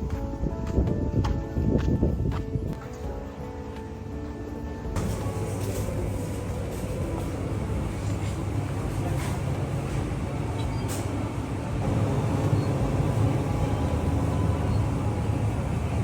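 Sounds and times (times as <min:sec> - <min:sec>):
car road and engine rumble: 0:05.0 - 0:16.0.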